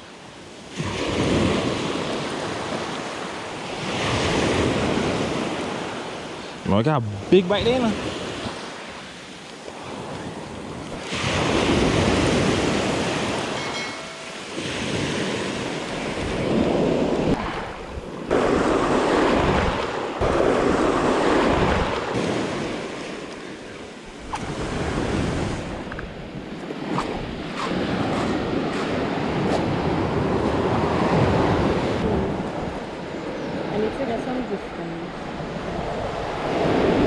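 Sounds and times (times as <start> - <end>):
surf washing onto beach: 0.0 - 37.0
wind buffeting microphone: 9.7 - 37.0.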